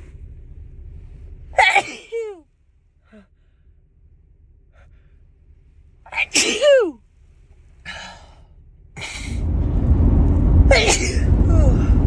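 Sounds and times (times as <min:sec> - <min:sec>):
person sneezing loudly: 0:06.2 - 0:06.9.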